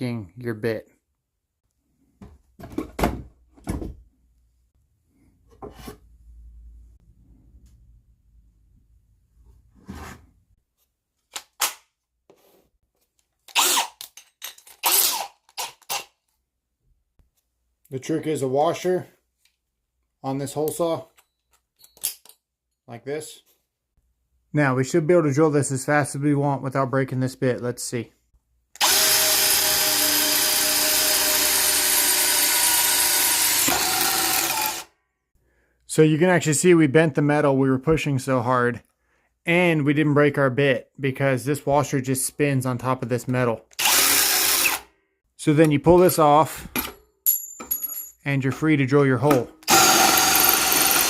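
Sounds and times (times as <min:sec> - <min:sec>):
power drill cutting sheet metal: 0:13.5 - 0:14.0, 0:14.8 - 0:16.1, 0:28.8 - 0:34.9, 0:43.8 - 0:44.9, 0:49.6 - 0:51.0
metal parts clacking with ring: 0:21.1 - 0:22.5.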